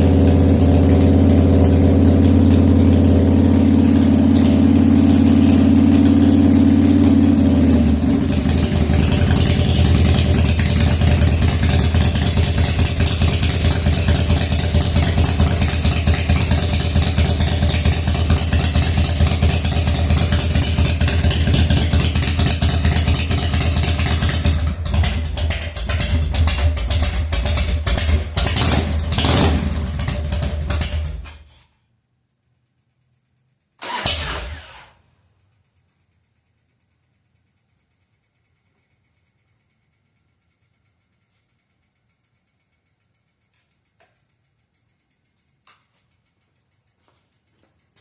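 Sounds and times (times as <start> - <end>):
motorcycle engine rough idle: 0.0 - 31.5.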